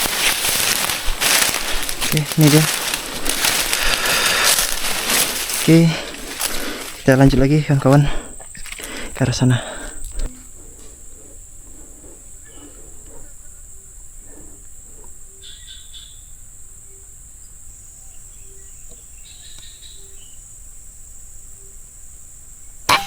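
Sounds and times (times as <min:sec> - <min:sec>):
bird chirps: 0:11.9 - 0:20.4.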